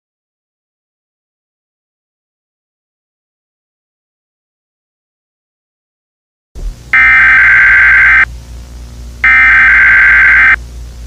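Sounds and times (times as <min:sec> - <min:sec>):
low hum: 0:06.7 - 0:10.8
harsh buzzy data bursts: 0:07.0 - 0:08.3, 0:09.2 - 0:10.6.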